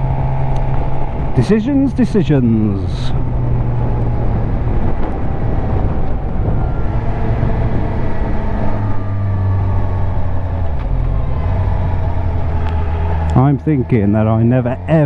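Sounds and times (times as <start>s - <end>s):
motorcycle engine running: 0.0s - 15.0s
wind on microphone: 3.1s - 14.3s.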